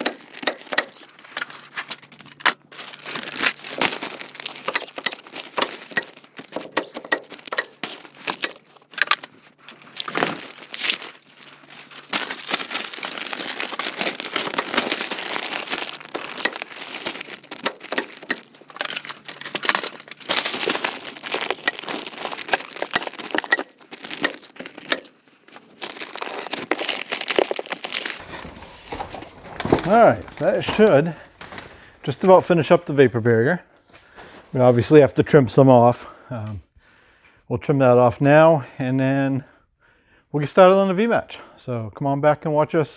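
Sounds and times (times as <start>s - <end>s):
plastic sheeting crinkling: 0.0s - 28.3s.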